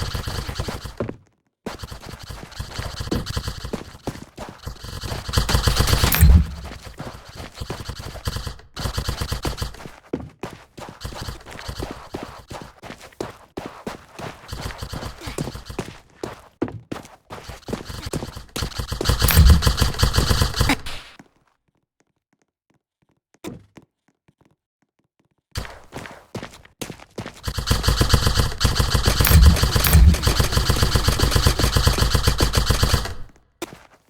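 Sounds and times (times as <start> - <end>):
airsoft gun automatic bursts: 0.0 - 1.1, 1.7 - 10.0, 11.0 - 12.6, 14.5 - 16.0, 17.4 - 21.2, 25.6 - 25.9, 27.4 - 33.4.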